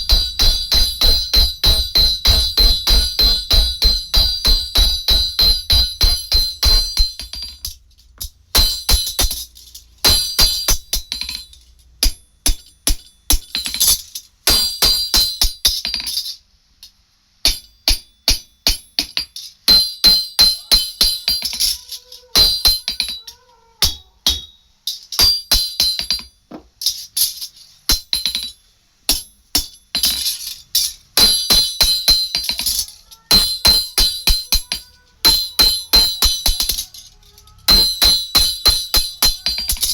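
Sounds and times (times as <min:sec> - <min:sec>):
hammer striking steel blade: 0:00.0 - 0:13.8, 0:31.2 - 0:37.0, 0:37.6 - 0:39.9.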